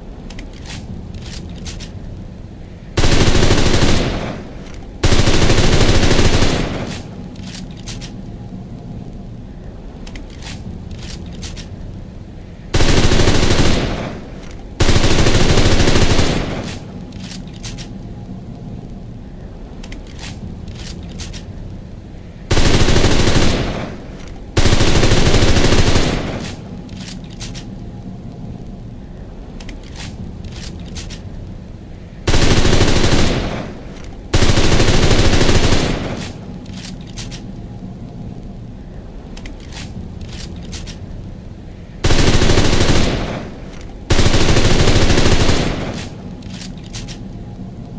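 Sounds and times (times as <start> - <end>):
low steady background noise: 0.0 - 47.9
faint clicks: 16.1 - 21.8, 36.0 - 41.4.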